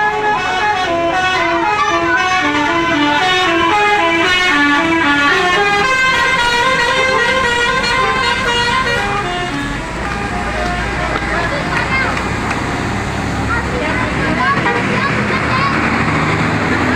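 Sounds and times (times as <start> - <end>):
bus melody horn tune: 0.0 - 12.1.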